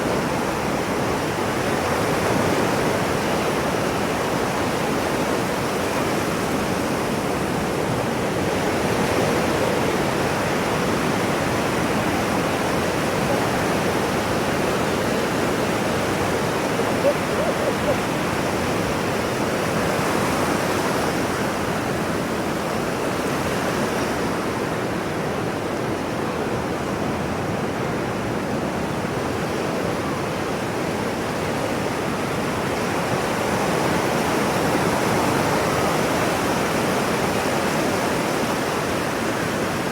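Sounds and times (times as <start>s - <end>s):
ocean surf washing: 11.4s - 20.6s.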